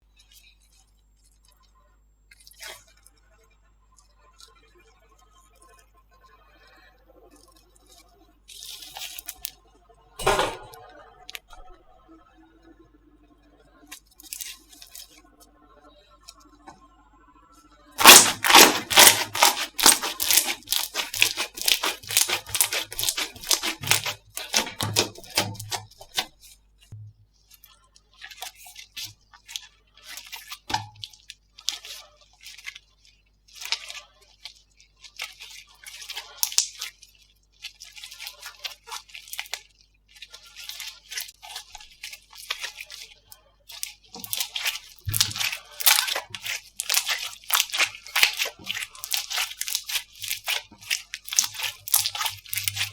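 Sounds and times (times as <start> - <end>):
slime squeezed by hand: 18.0 - 26.5, 33.5 - 37.0, 43.7 - 52.9.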